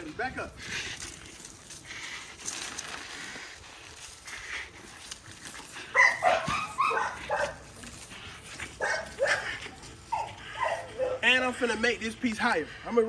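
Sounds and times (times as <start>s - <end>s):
dog barking: 6.0s - 7.6s, 8.8s - 11.3s.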